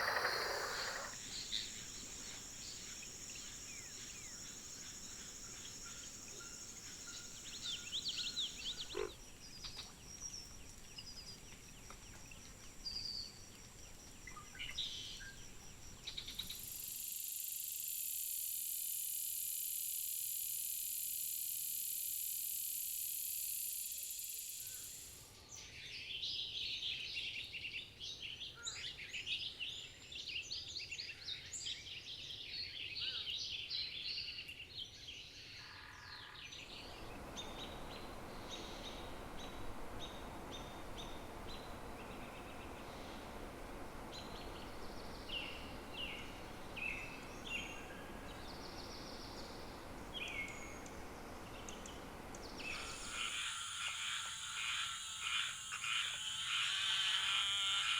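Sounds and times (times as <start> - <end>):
rushing background noise: 36.7 - 50.2.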